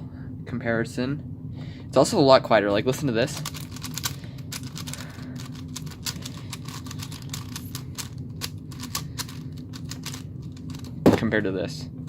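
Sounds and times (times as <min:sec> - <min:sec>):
puzzle cube plastic clicks: 0:03.4 - 0:11.0.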